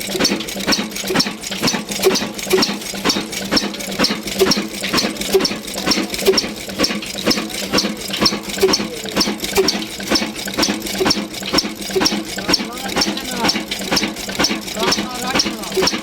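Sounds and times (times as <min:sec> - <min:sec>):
diesel engine clattering: 0:00.0 - 0:16.0
heavy engine knock: 0:00.0 - 0:16.0
steady engine hum: 0:00.0 - 0:16.0.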